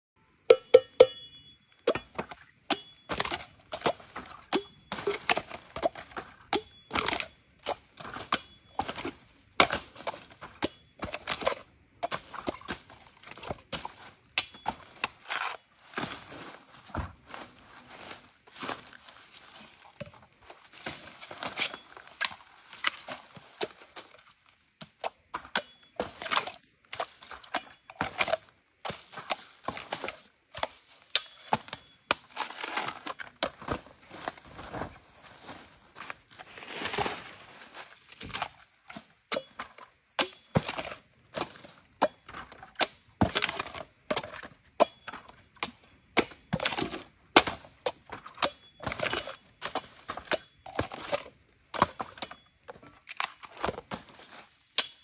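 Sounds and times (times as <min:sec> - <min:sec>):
blade chopping bamboo: 0:01.9 - 0:15.6.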